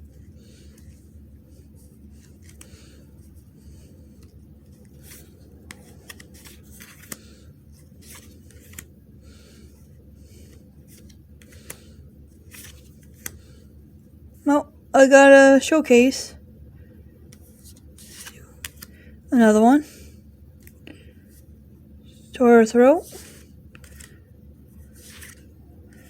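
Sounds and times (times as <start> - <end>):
low steady hum: 0.0 - 26.0
playing cards sliding together: 0.4 - 3.0, 3.6 - 13.5, 17.4 - 18.9, 23.0 - 24.2, 24.8 - 26.0.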